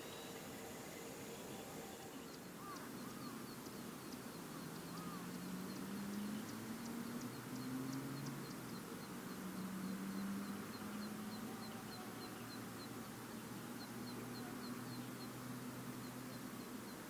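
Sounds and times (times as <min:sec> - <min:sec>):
faint high ticking: 0:00.0 - 0:17.0
low drawn-out animal calls: 0:04.7 - 0:08.6.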